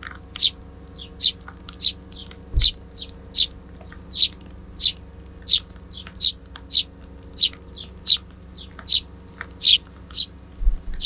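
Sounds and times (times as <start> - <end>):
sparrow chirping: 0.3 - 10.4.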